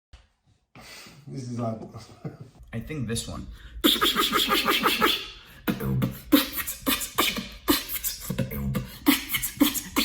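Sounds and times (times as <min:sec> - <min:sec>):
beatboxing: 0:03.8 - 0:10.0.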